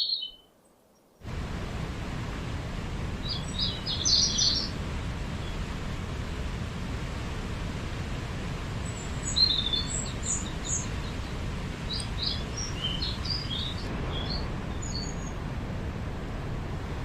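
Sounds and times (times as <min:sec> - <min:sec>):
small birds chirping: 0:00.0 - 0:01.1, 0:03.2 - 0:05.7, 0:08.8 - 0:15.4
low background rumble: 0:01.2 - 0:17.0.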